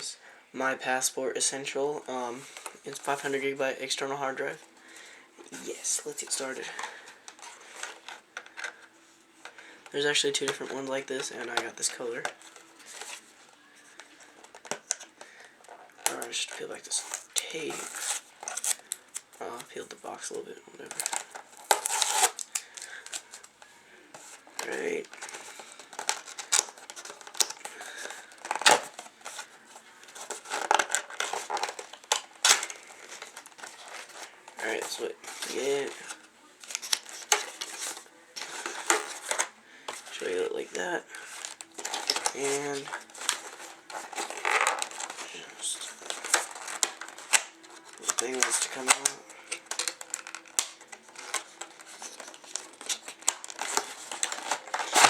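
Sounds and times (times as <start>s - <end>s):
packaging ripping and crinkling: 13.9s - 23.5s, 24.1s - 55.0s.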